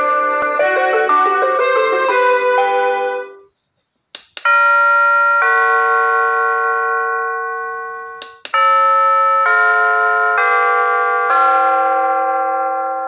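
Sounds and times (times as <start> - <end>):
doorbell ding-dong chime: 0.0 - 3.5, 4.5 - 13.0
doorbell melodic tune: 0.0 - 3.5, 4.5 - 13.0
doorbell clicks: 7.6 - 8.9.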